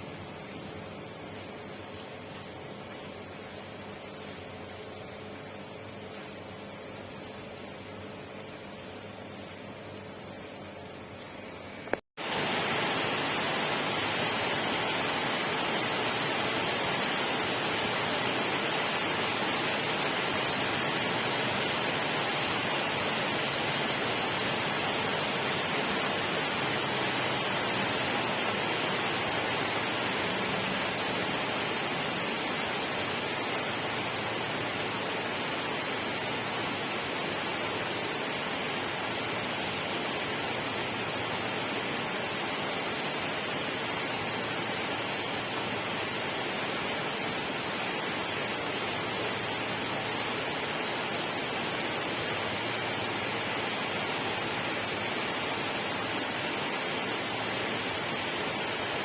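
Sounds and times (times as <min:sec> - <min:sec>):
falling water rushing: 0:12.2 - 0:59.0.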